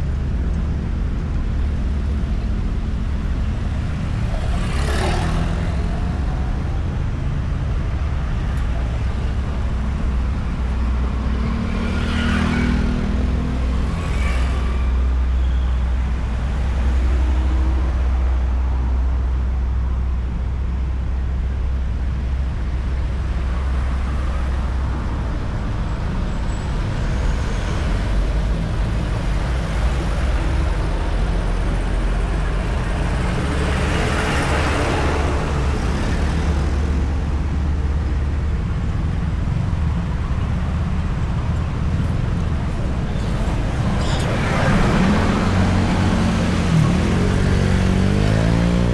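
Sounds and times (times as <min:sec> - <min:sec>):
highway traffic rumble: 0:00.0 - 0:48.9
vehicle passing close: 0:03.0 - 0:15.2, 0:23.1 - 0:48.9.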